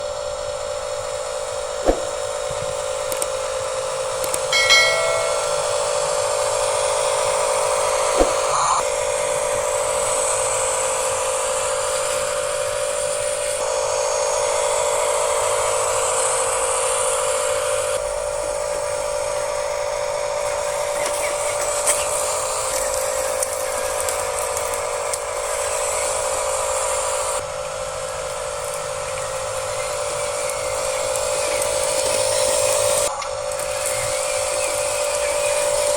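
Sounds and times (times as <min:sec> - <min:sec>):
brief chiming tone: 0:04.5 - 0:06.1.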